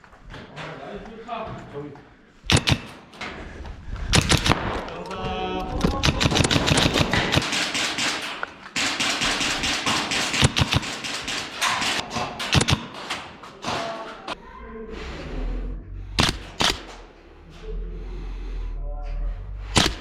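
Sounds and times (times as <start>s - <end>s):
airsoft automatic fire clicks: 2.5s - 3.1s, 4.0s - 5.0s, 5.8s - 13.1s, 16.2s - 17.0s, 19.8s - 20.0s.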